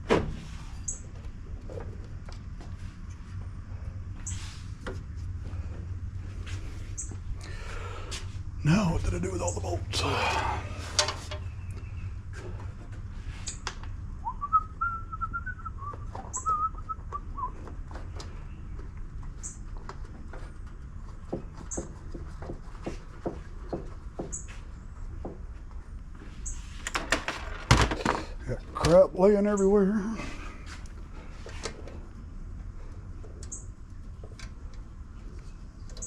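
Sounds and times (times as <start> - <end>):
steady low hum: 0.0 - 27.0
man whistling a tune: 14.2 - 17.6.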